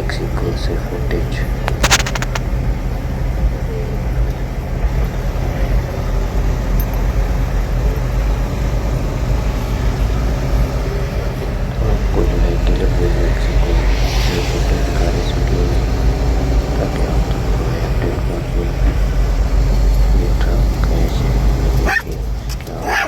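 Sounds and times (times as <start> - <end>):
vehicle engine rumbling: 0.0 - 23.0
faint tones: 9.6 - 22.8.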